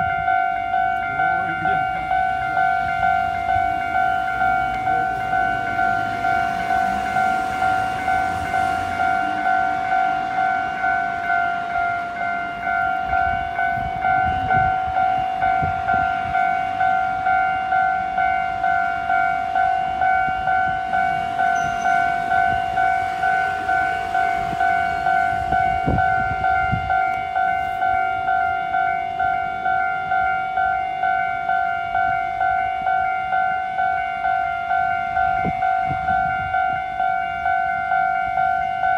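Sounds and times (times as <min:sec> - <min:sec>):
level crossing alarm ringing: 0:00.0 - 0:38.9
train low rumble: 0:00.0 - 0:38.9.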